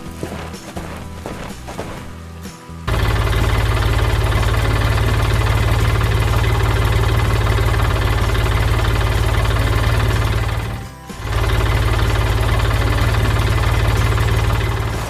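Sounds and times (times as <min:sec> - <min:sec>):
large engine chugging: 0:02.9 - 0:15.0.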